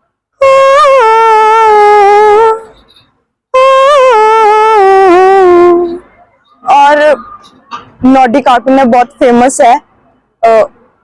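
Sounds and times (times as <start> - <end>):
woman humming nasal tune: 0.4 - 2.7, 3.6 - 6.0.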